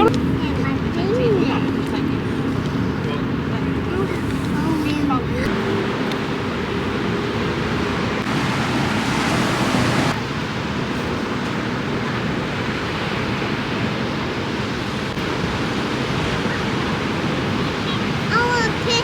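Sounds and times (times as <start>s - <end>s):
surf rushing: 0.0s - 19.0s
wind across microphone: 0.0s - 19.0s.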